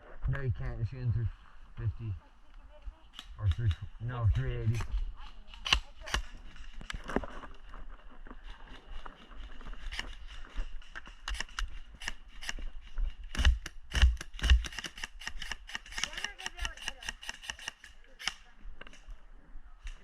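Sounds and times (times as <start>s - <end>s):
airsoft guns firing: 13.4s - 18.4s.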